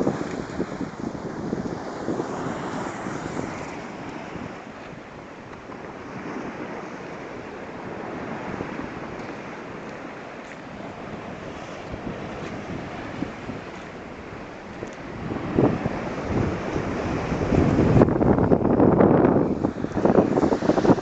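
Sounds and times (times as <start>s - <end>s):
sea waves breaking: 0.0s - 21.0s
wind buffeting microphone: 0.0s - 21.0s.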